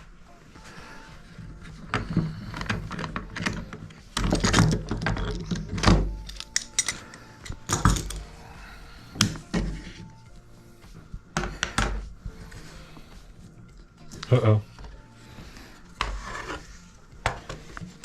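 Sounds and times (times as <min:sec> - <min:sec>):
clamp parts clattering: 0:01.9 - 0:08.3.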